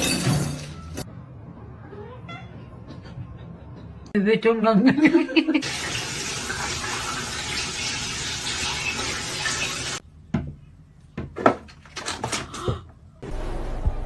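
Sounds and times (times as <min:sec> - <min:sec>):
water running from a tap: 0:05.6 - 0:10.0.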